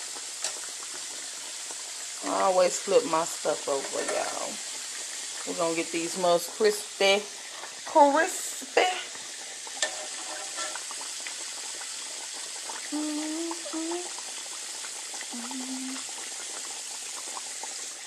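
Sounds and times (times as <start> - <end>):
meat sizzling in a pan: 0.0 - 18.0
utensil clicking on pan: 9.8 - 10.9.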